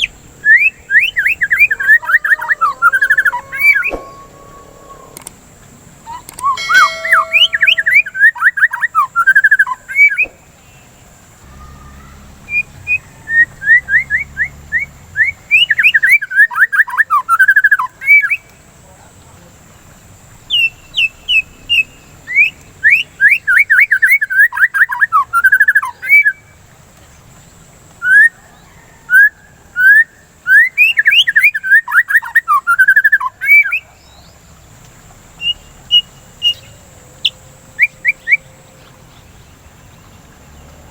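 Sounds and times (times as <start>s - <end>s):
bird singing whistled notes: 0.0s - 5.2s, 6.0s - 18.5s, 20.5s - 26.5s, 28.0s - 34.4s, 35.4s - 38.5s
faint high-pitched tone: 6.6s - 8.9s.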